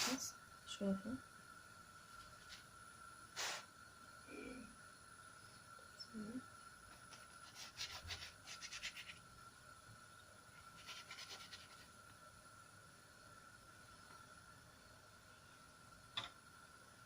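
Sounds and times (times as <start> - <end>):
faint high whine: 0.0 - 17.0
pastry scratching in a pan: 7.0 - 9.3, 10.6 - 12.0.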